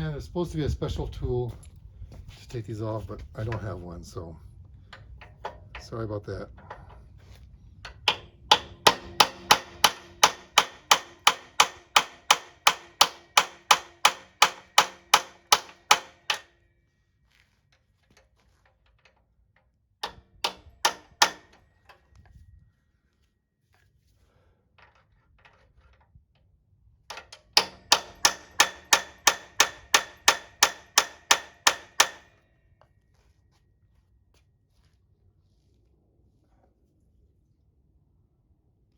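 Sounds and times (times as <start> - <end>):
hammer blows on metal: 8.0 - 16.5.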